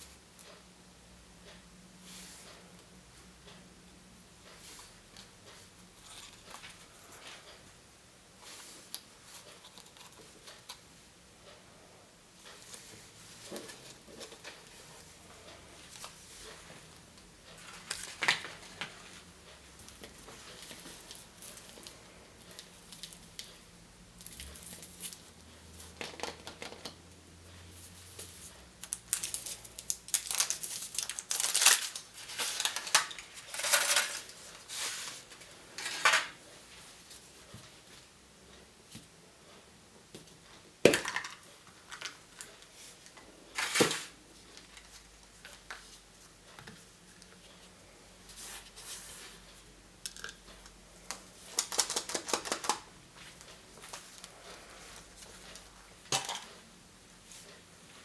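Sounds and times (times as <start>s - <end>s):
wrapper crinkling and tearing: 28.8s - 34.3s, 51.4s - 52.8s.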